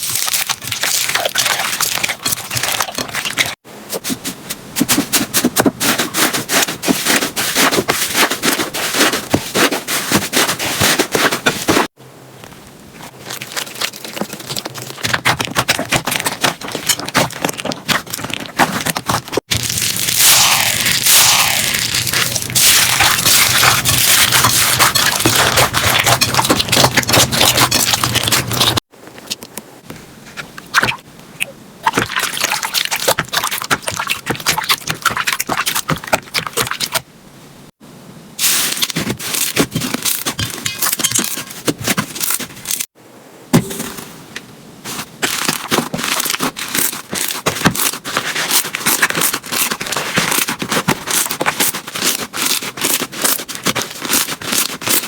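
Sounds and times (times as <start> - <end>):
slime crackling and popping: 13.3 - 28.8.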